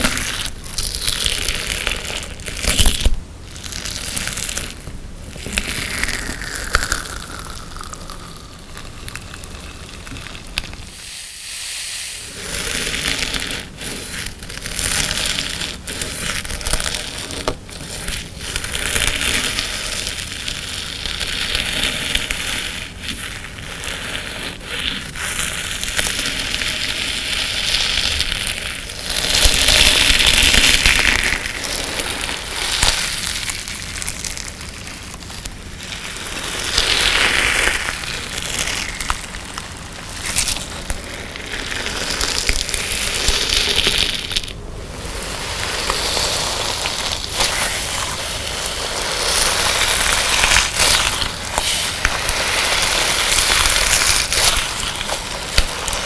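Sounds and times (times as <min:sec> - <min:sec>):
hands squashing gritty slime: 0:12.3 - 0:56.0.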